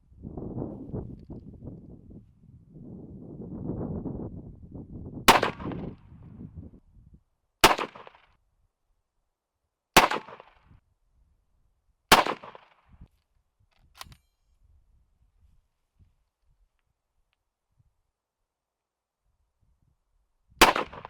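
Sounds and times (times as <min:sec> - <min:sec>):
rifle shots echoing: 0:05.3 - 0:05.8, 0:07.6 - 0:08.2, 0:10.0 - 0:10.5, 0:12.1 - 0:12.6, 0:20.6 - 0:21.0
faint sharp click: 0:13.2 - 0:14.3.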